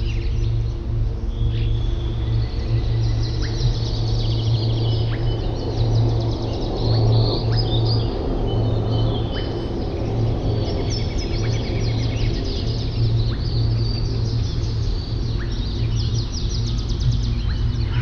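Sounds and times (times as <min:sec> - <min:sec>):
small birds chirping: 0:00.0 - 0:18.0
steady low hum: 0:00.0 - 0:18.0.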